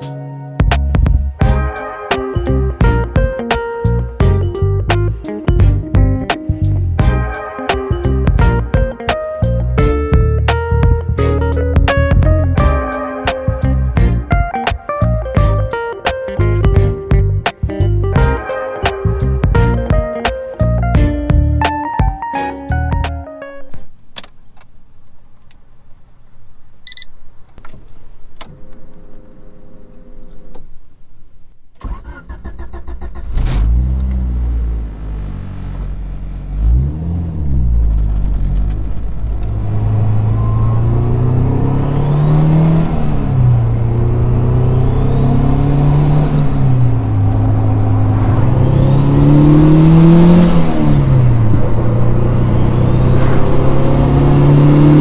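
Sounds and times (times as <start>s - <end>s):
car engine revving: 1.4s - 21.4s, 31.9s - 55.0s
rising turbo whistle: 12.6s - 15.5s, 39.3s - 55.0s.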